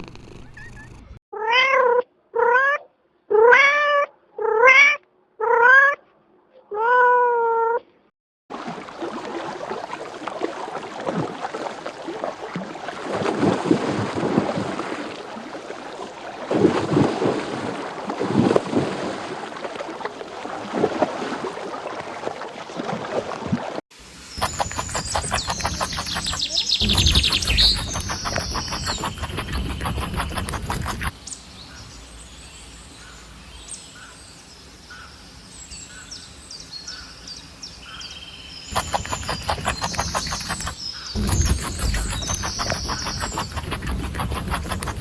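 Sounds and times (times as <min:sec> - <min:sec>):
uneven crackling noise: 0:00.0 - 0:01.2, 0:24.4 - 0:31.2, 0:38.7 - 0:45.0
cat meowing: 0:01.4 - 0:06.0.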